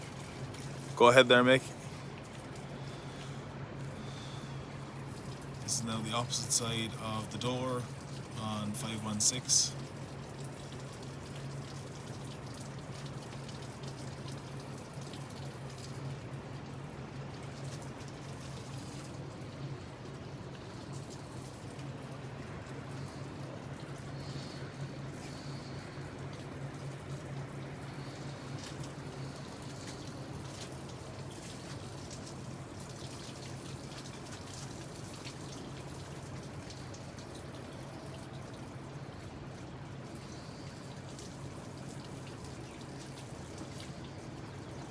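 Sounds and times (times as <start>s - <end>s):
water spattering against a door: 28.3s - 39.6s.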